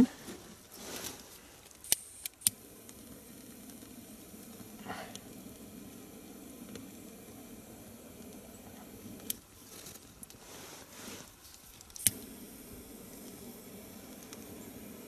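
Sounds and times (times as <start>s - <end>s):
small flame hissing: 0.0s - 15.0s
short scrape: 9.7s - 11.4s.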